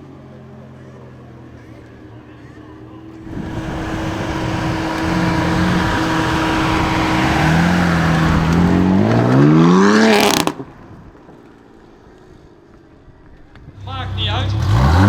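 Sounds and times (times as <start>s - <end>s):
loud rushing noise: 3.2s - 10.6s
car engine revving: 3.2s - 10.8s, 13.8s - 15.0s.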